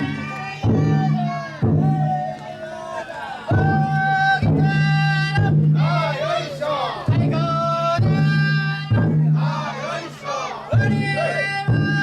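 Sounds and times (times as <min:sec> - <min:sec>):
taiko drum strikes: 0:00.0 - 0:02.4, 0:03.5 - 0:06.2, 0:07.0 - 0:09.9, 0:10.7 - 0:12.0
group of voices chanting: 0:00.0 - 0:12.0.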